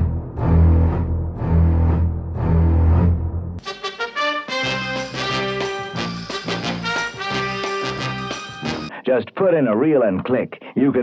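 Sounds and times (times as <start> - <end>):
swing instrumental music: 3.6 - 8.9.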